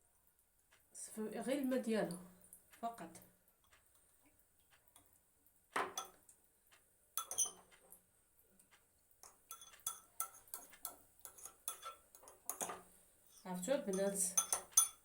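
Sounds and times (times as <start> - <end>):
utensils clinking against strainer: 7.2 - 7.6, 9.5 - 15.0.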